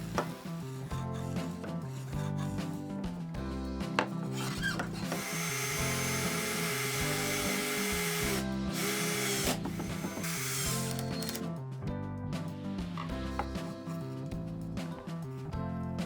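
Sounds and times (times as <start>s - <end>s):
background music: 0.0s - 16.0s
power tool running: 4.4s - 11.4s.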